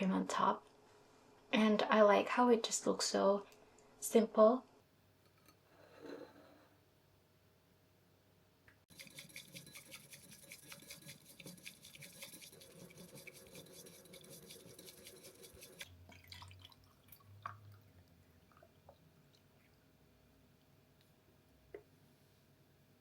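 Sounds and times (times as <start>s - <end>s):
scratching strokes: 8.9s - 15.9s.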